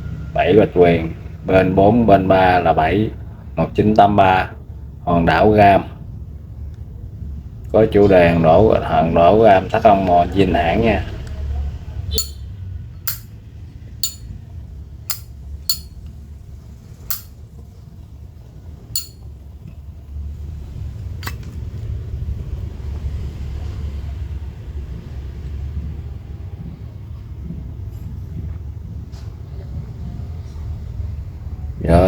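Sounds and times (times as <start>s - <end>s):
metal lighter clicks and clinks: 13.1s - 13.3s, 14.0s - 14.3s, 15.1s - 16.0s, 17.1s - 17.3s, 19.0s - 19.2s.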